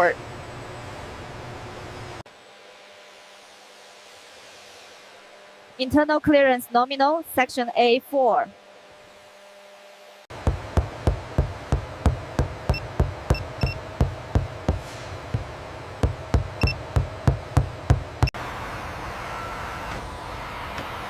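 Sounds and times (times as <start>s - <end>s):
sharp knocks: 10.3s - 18.3s
steady hum: 10.3s - 18.4s.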